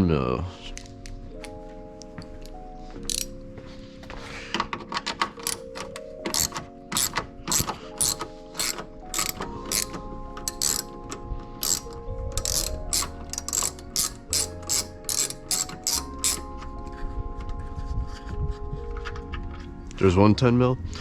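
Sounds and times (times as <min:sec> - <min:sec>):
hand ratchet clicking: 0:03.0 - 0:03.3, 0:05.0 - 0:11.0, 0:11.6 - 0:16.5.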